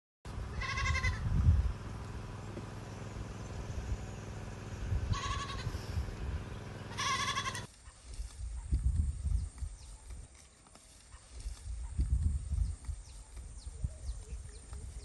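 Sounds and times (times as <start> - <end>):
steady low hum: 0.3 - 10.4, 11.2 - 15.0
goat bleating: 0.5 - 1.2, 5.1 - 5.9, 6.9 - 7.7.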